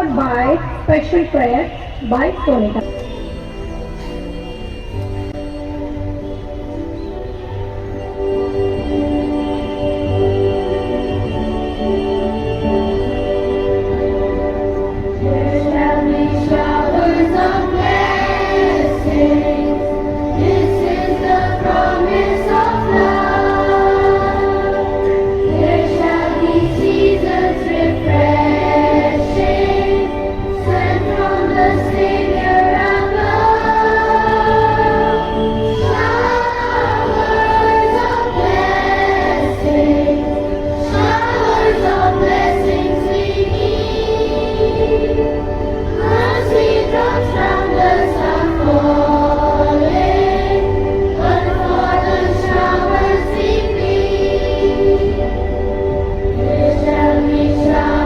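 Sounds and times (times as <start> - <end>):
choir singing held notes: 0.0 - 58.0.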